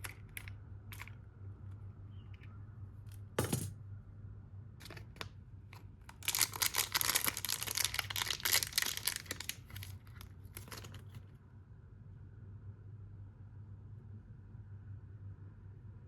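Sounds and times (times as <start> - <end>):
keycaps clicking and crinkling: 0.0 - 1.2, 6.1 - 11.2.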